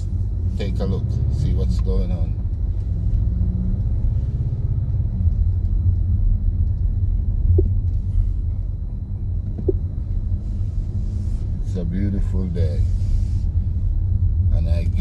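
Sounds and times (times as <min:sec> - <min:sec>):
low rumble: 0:00.0 - 0:15.0.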